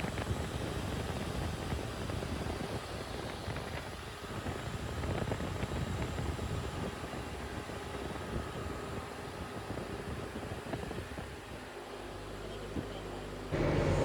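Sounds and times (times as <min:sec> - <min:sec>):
electric fans whooshing hum: 0:13.5 - 0:14.0.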